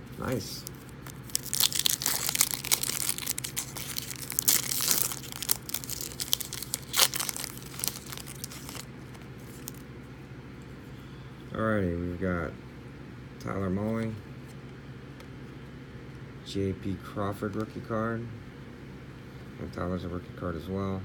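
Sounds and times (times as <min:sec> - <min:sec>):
foil wrapper tearing and crinkling: 0:00.2 - 0:09.8.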